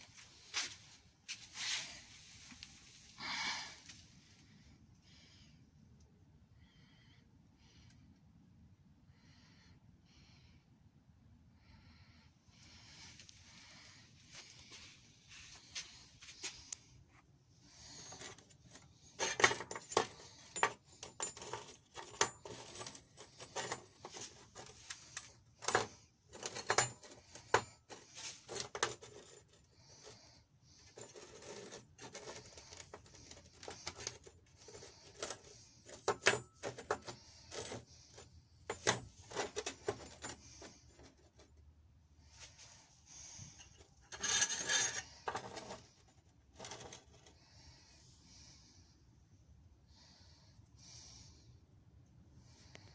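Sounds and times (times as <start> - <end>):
metal parts clinking: 18.0 - 29.7, 30.9 - 41.5, 43.6 - 47.3.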